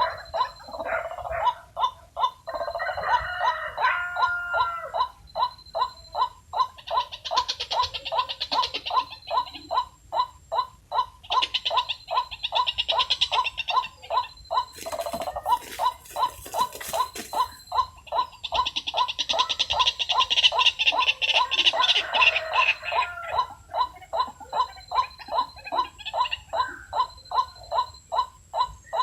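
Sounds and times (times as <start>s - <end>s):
waterhens calling rapidly: 0.0s - 29.0s
hissing rustle: 14.7s - 17.6s.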